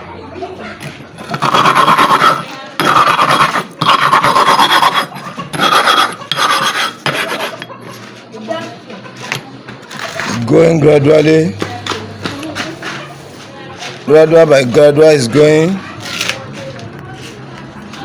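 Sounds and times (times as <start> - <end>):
stone grinding on stone: 1.2 - 7.7.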